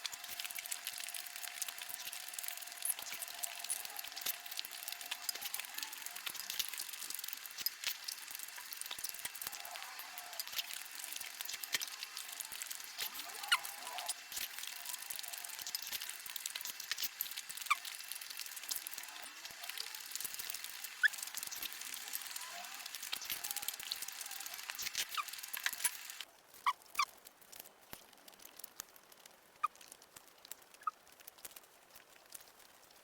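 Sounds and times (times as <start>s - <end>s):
wet chewing and mouth smacking: 0.0s - 28.9s
small clicks with squeaks: 0.0s - 33.0s.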